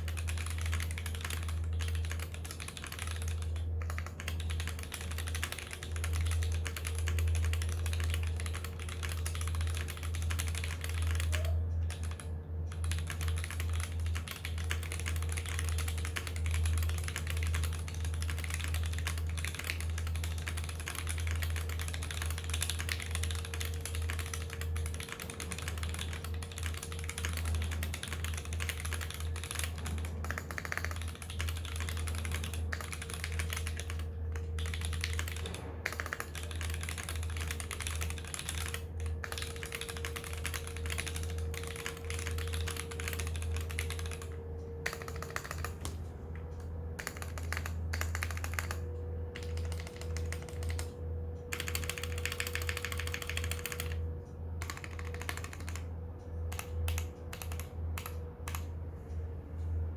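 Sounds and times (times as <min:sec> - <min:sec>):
mechanical keyboard typing: 0:00.0 - 0:58.8.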